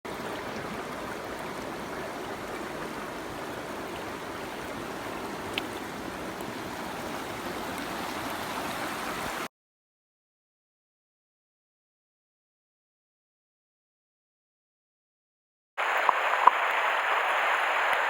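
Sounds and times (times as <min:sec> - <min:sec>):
stream water rushing: 0:00.1 - 0:09.5, 0:15.8 - 0:18.0.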